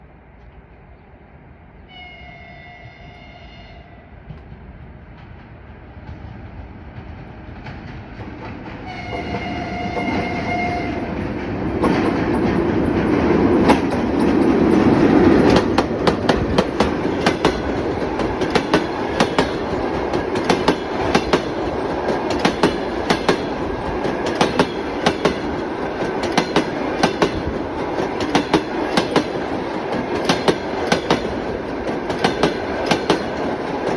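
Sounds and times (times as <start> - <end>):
train horn chords: 1.9 - 4.1, 8.8 - 11.2
train wheels clickety-clack: 4.2 - 33.9.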